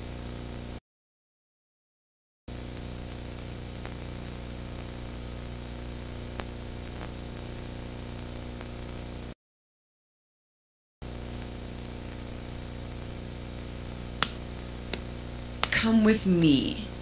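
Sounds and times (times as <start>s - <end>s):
low electrical hum: 2.5s - 9.4s, 11.1s - 17.0s
faint ticks: 3.8s - 4.0s, 6.3s - 7.1s.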